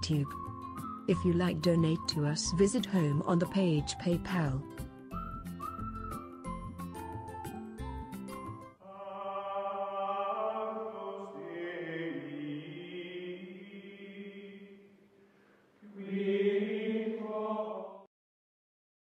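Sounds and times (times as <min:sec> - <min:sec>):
choir-like chanting voices: 0:08.8 - 0:14.9, 0:15.8 - 0:18.1.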